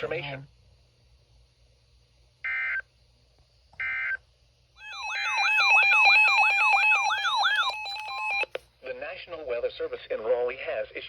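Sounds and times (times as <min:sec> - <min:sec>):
digital data tone bursts: 0:04.8 - 0:08.4
warbling electronic alert tone: 0:04.8 - 0:08.5.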